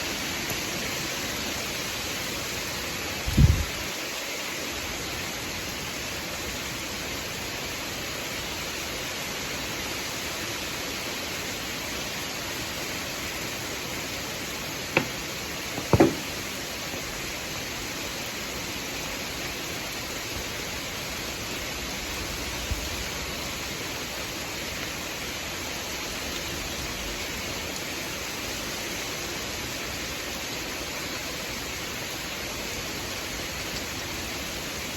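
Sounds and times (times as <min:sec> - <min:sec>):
steady rain falling: 0:00.0 - 0:34.9
sharp knocks: 0:15.0 - 0:15.2, 0:15.8 - 0:16.4
low thump: 0:15.8 - 0:16.4.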